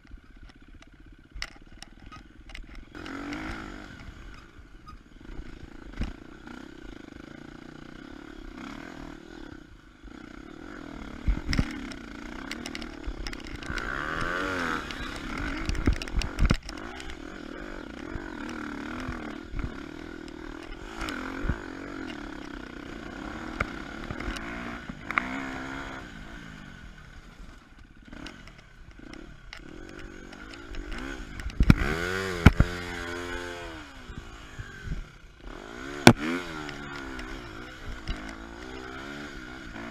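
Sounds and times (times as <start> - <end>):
dirt bike engine revving: 0.4 - 39.9.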